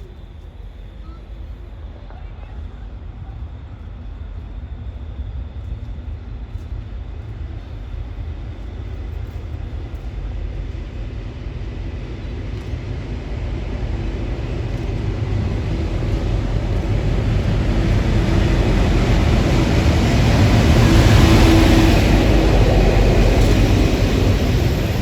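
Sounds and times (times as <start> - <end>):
train rumbling on tracks: 0.0 - 25.0.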